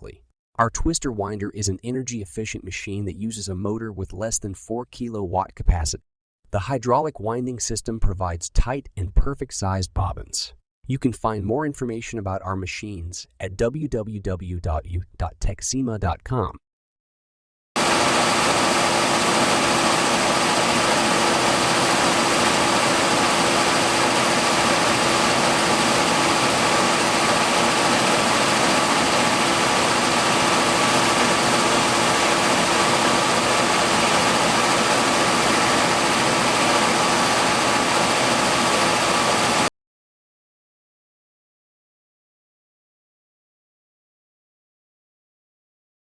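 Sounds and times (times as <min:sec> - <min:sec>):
yarn winding machine running: 0:17.8 - 0:39.7.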